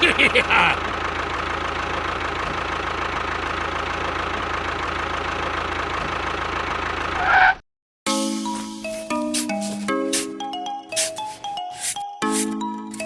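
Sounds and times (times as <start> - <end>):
vehicle engine idling: 0.0 - 7.5.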